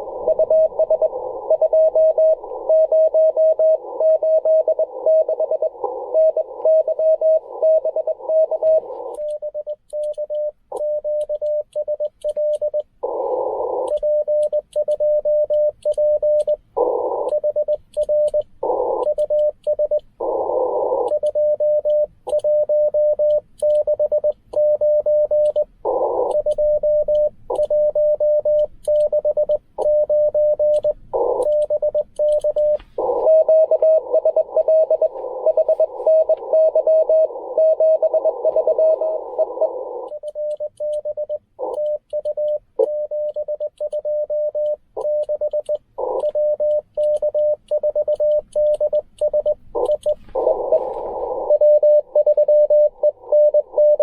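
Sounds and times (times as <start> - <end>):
morse code tones: 0.0 - 54.0
radio band hiss: 4.8 - 9.2, 13.0 - 13.9, 16.8 - 17.3, 18.6 - 19.1, 20.2 - 21.1, 25.8 - 26.4, 31.1 - 31.6, 32.7 - 40.1, 46.0 - 46.5, 49.7 - 54.0.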